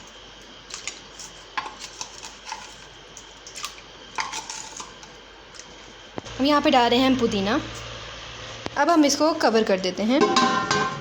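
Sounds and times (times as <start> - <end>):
metal spoon clinking on pot: 10.2 - 11.0.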